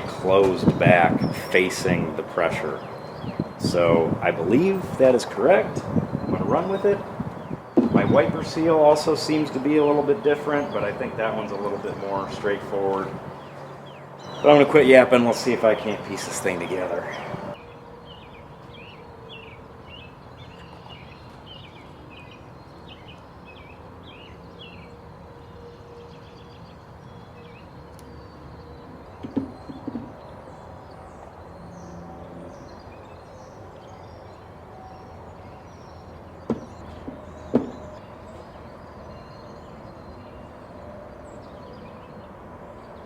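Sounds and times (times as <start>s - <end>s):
small birds chirping: 0.0s - 43.0s
short sharp knocks: 7.3s - 8.1s, 36.5s - 37.9s.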